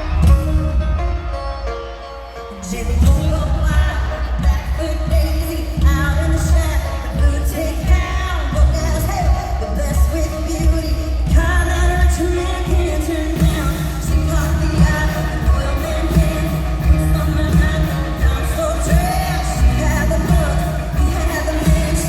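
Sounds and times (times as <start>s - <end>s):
live pop-country band: 0.0s - 22.0s
woman singing: 2.5s - 22.0s
heavy pulsing bass: 13.4s - 22.0s.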